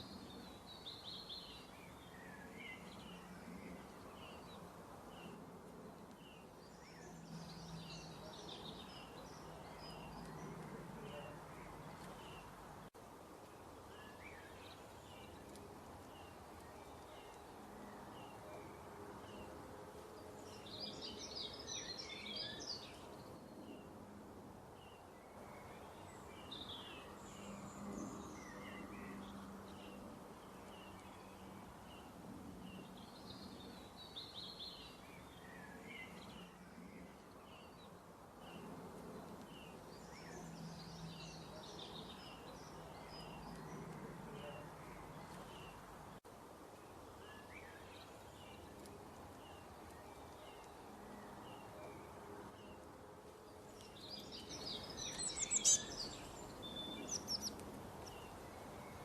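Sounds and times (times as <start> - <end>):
small birds chirping: 0.0 - 24.1, 24.7 - 59.0.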